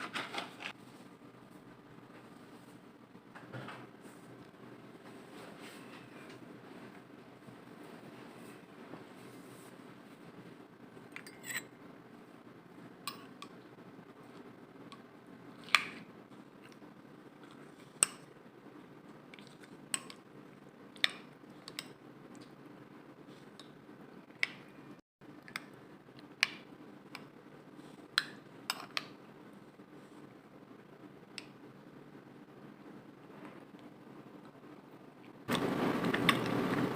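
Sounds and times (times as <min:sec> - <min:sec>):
low steady hum: 0:00.0 - 0:36.9
utensils and dishes clinking: 0:11.1 - 0:11.8.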